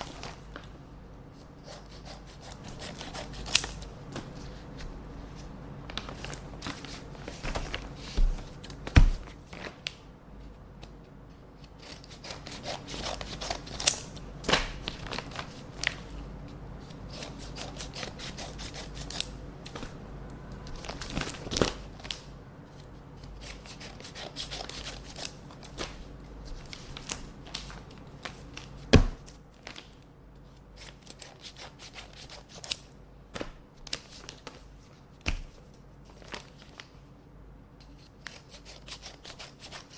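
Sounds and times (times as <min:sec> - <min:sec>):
paper rustling: 0:00.0 - 0:00.7, 0:03.5 - 0:10.6, 0:20.6 - 0:30.0
scissors snipping paper: 0:01.6 - 0:03.9, 0:11.6 - 0:15.2, 0:16.9 - 0:19.4, 0:23.2 - 0:26.0, 0:30.8 - 0:32.9, 0:38.0 - 0:39.9.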